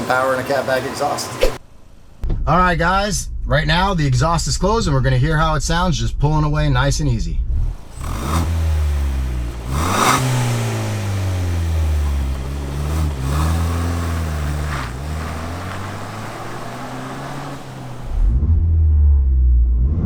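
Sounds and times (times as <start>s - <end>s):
car engine pulling away: 7.6s - 18.4s.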